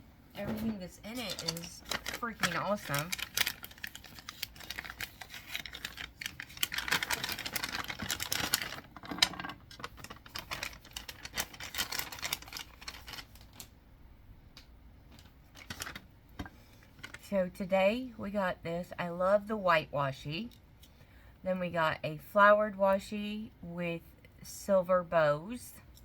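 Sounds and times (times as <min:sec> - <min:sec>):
packaging crackling and rustling: 0:00.4 - 0:13.8, 0:15.1 - 0:16.1, 0:16.8 - 0:17.2.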